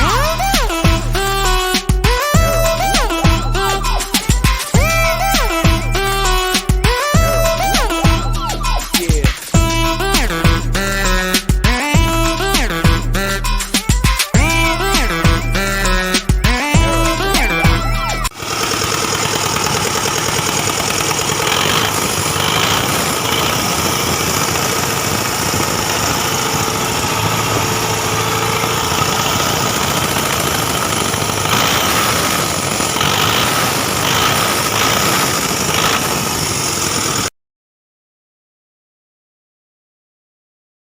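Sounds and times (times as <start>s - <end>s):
music: 0.0s - 18.3s
diesel engine running: 14.4s - 37.3s.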